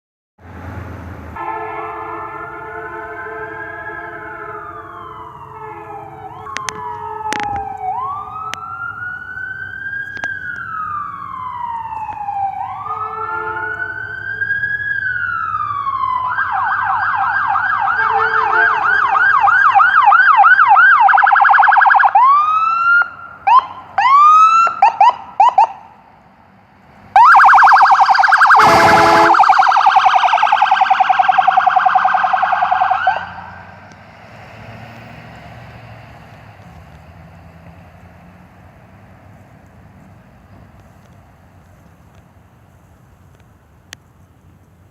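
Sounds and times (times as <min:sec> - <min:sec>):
train horn chord: 0:01.4 - 0:04.6, 0:12.9 - 0:13.9, 0:18.0 - 0:18.9, 0:28.6 - 0:29.4
ambulance siren: 0:01.4 - 0:26.1, 0:27.1 - 0:34.0.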